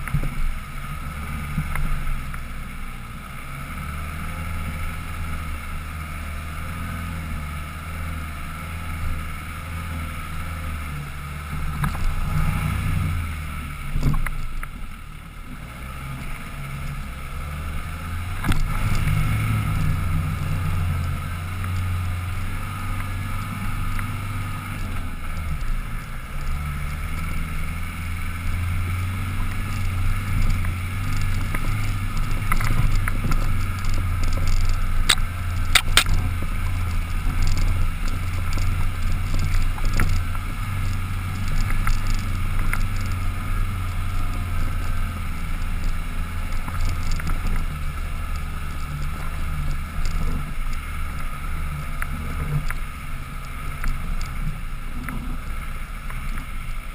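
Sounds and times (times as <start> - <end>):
engine droning uphill: 0.0 - 56.9.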